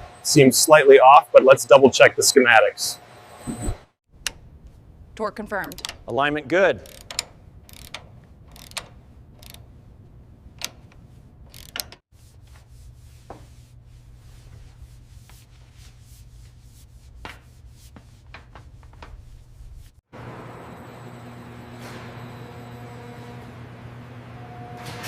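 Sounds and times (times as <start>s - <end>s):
workshop tools clicking and tapping: 5.6s - 6.2s, 6.8s - 9.6s, 10.6s - 12.0s.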